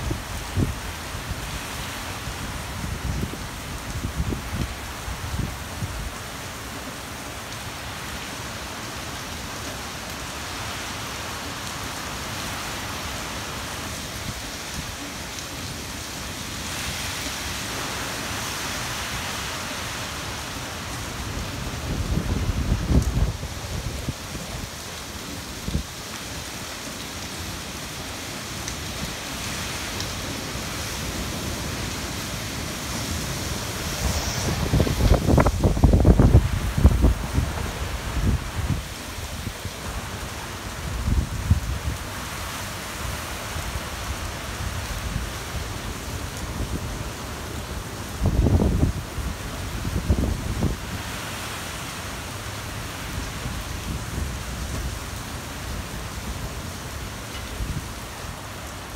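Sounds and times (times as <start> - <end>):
heavy rain and wind: 0.0 - 58.9
wind gusts buffeting microphone: 21.0 - 24.8, 30.7 - 39.8, 48.0 - 51.4.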